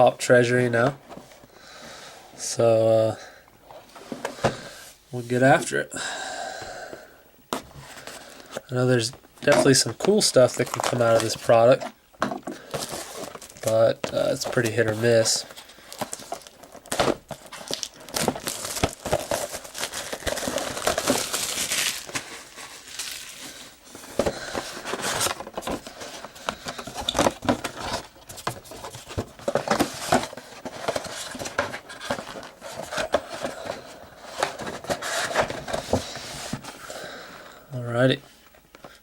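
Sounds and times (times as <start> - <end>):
plastic wrapping crinkling and tearing: 9.7 - 11.8, 12.6 - 36.2.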